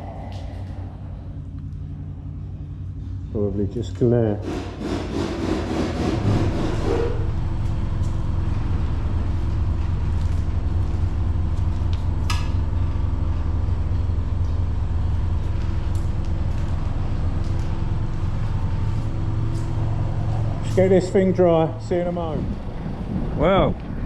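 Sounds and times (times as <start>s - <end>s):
low machine hum: 0.0s - 24.0s.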